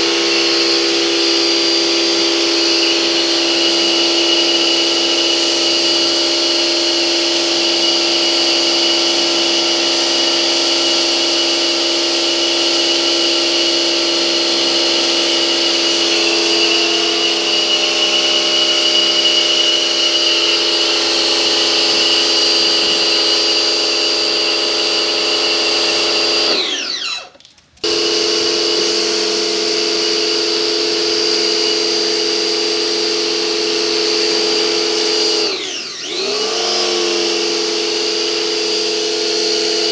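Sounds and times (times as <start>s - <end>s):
pressure washer motor whine: 0.0s - 39.9s
water spray hissing: 15.0s - 26.5s.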